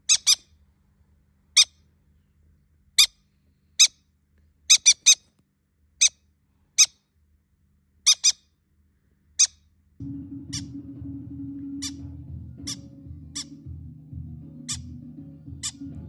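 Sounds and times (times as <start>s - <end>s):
parrot chirping: 0.0s - 0.5s, 4.7s - 5.3s, 8.1s - 8.5s, 9.4s - 9.6s, 11.7s - 13.6s, 14.7s - 14.9s, 15.6s - 15.9s.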